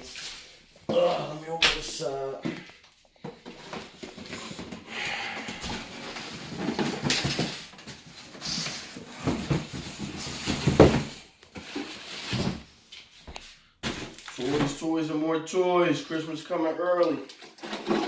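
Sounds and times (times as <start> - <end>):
cardboard rustling and scraping: 2.4 - 7.1, 7.8 - 13.2, 17.3 - 18.0.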